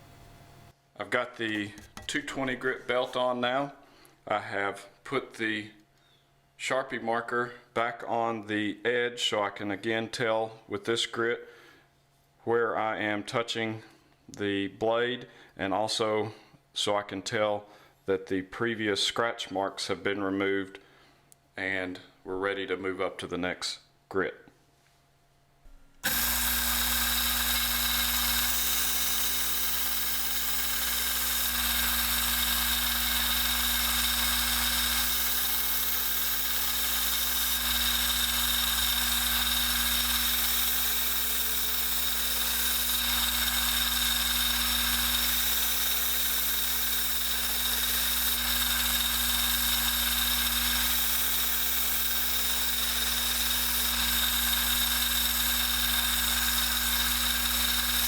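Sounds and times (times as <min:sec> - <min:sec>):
belt sander motor hum: 0:26.0 - 0:58.0
sanding belt grinding hiss: 0:26.0 - 0:58.0.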